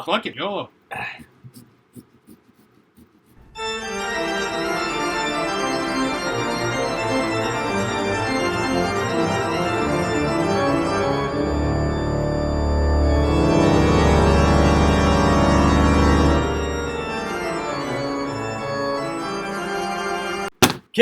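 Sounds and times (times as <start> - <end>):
organ music: 3.5 - 20.5.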